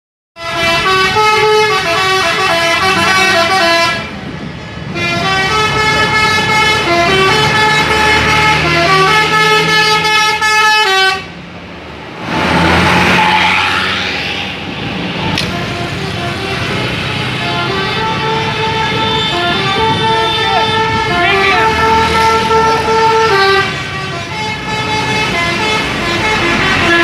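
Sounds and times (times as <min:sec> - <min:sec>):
loud rush of noise: 0:11.2 - 0:17.5
tuned air horns playing melody: 0:15.4 - 0:27.0.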